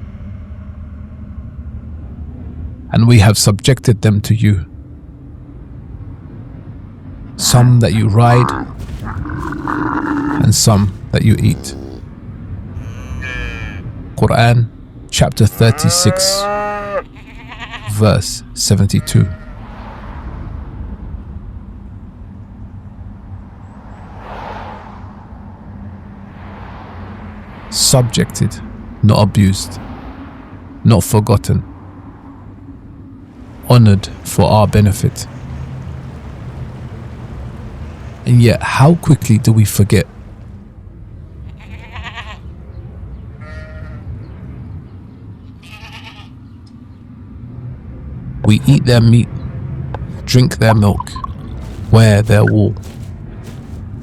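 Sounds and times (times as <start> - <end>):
low outdoor rumble: 4.2 - 17.7, 24.9 - 43.4, 46.9 - 54.0
rushing noise: 7.4 - 12.1, 33.2 - 41.0
livestock bleating: 8.3 - 12.1, 12.8 - 13.9, 15.4 - 18.1, 41.4 - 42.4, 43.4 - 44.0, 45.6 - 46.4.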